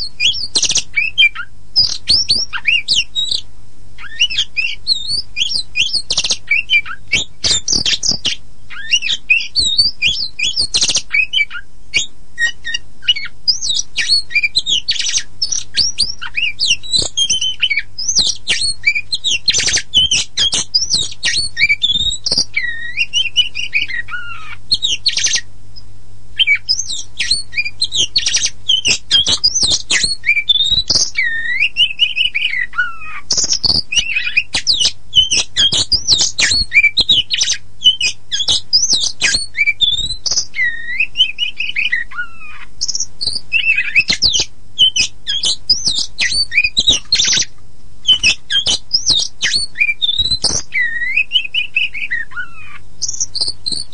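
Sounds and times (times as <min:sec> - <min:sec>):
songbird singing: 0:00.0 - 0:53.9.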